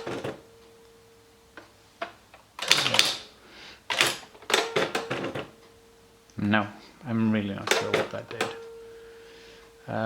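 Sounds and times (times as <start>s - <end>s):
typewriter clicks: 0.0s - 0.4s, 2.0s - 3.3s, 3.9s - 5.6s, 7.6s - 8.7s
typewriter keys clattering: 0.0s - 0.4s, 2.6s - 3.3s, 3.9s - 5.6s, 7.6s - 8.6s
typewriter running hum: 0.0s - 0.6s, 2.6s - 5.7s, 7.5s - 8.7s.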